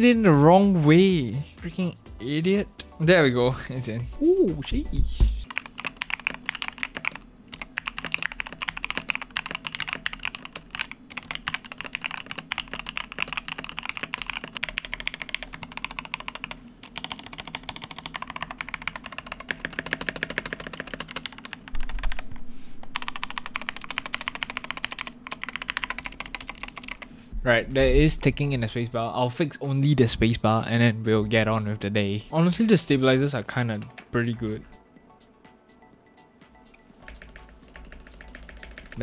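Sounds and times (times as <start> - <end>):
fast typing on mechanical keyboard: 5.4 - 22.3, 22.9 - 27.1, 37.0 - 39.0.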